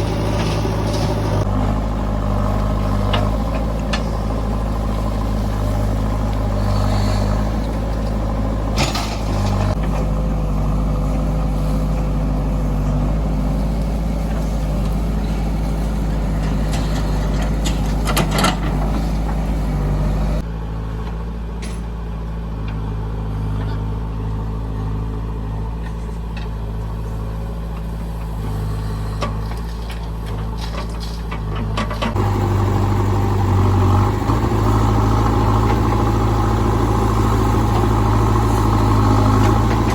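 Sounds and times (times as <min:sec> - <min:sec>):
diesel machinery engines running: 0:00.0 - 0:39.9.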